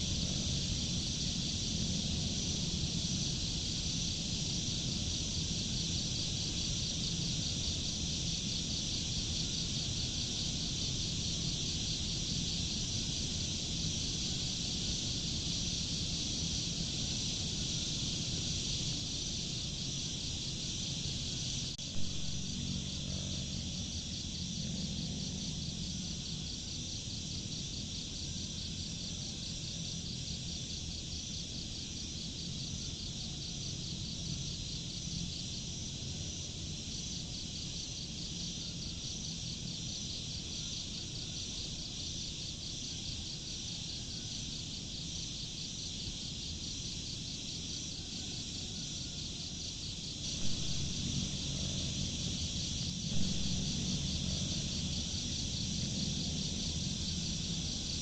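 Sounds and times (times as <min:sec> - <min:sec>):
low steady rumble: 0:00.0 - 0:28.1, 0:50.2 - 0:58.0
insects chirring: 0:00.0 - 0:58.0.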